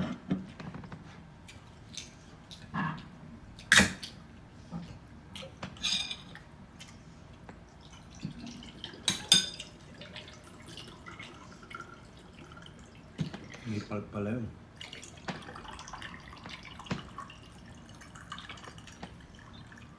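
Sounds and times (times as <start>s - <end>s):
utensils clicking on dishes: 5.8s - 6.4s, 9.1s - 9.7s.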